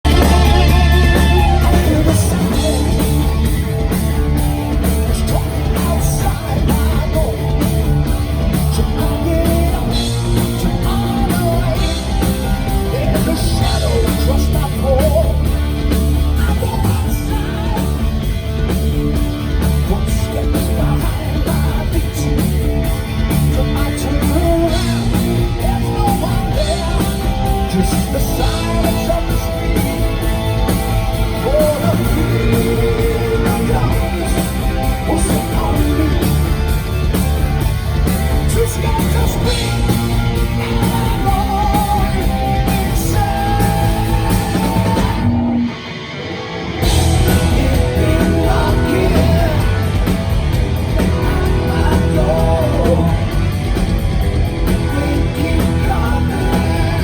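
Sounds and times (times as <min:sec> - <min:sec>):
person singing: 0:00.0 - 0:03.8, 0:05.0 - 0:15.6, 0:23.4 - 0:36.8, 0:38.4 - 0:45.6, 0:46.8 - 0:53.6, 0:54.6 - 0:57.0
hard rock band playing: 0:00.0 - 0:57.0.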